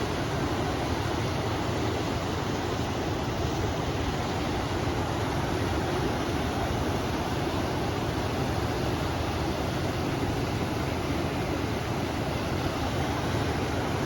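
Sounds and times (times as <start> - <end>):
river flowing: 0.0 - 14.0
wind: 0.0 - 14.0.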